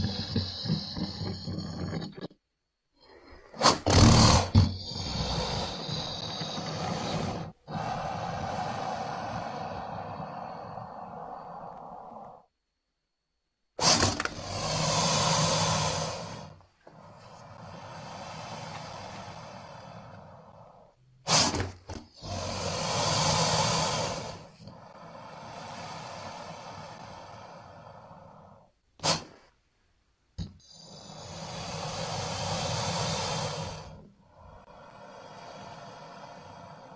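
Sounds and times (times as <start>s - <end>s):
creature breathing: 0.0s - 2.4s, 3.0s - 12.5s, 13.8s - 29.5s, 30.4s - 36.9s
low growling creature rumble: 0.0s - 2.4s, 3.9s - 12.5s
sharp snorts: 0.0s - 2.4s, 3.0s - 12.4s, 13.8s - 29.6s, 30.4s - 36.9s.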